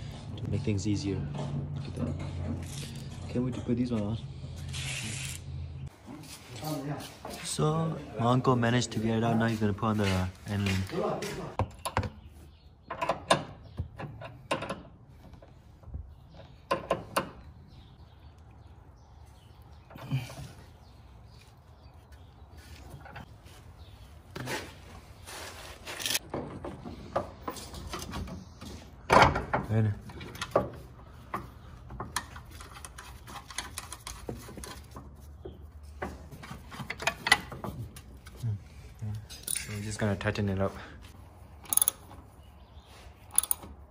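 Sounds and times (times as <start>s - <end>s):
metal tools clinking: 39.2s - 40.2s, 41.6s - 42.1s, 43.2s - 43.7s.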